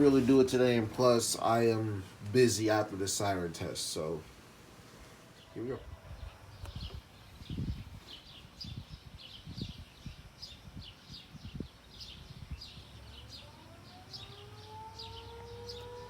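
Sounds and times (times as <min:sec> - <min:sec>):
bird chirping: 0:05.4 - 0:16.0
warning siren winding up: 0:13.2 - 0:16.0.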